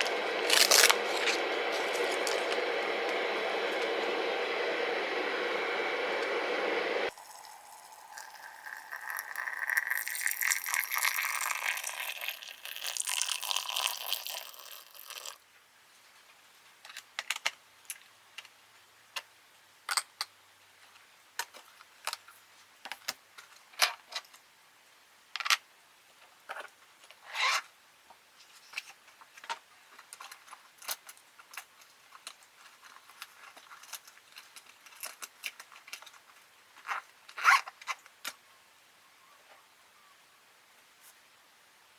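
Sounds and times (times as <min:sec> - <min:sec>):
rustling and crinkling: 0:00.0 - 0:03.8, 0:28.3 - 0:38.4.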